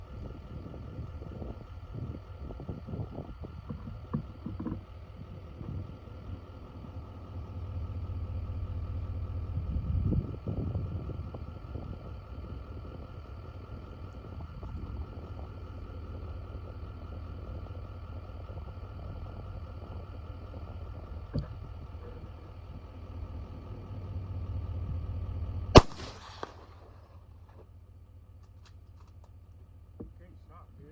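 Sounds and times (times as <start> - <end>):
low steady rumble: 0.0 - 30.9
rifle shot with echo: 25.8 - 27.1.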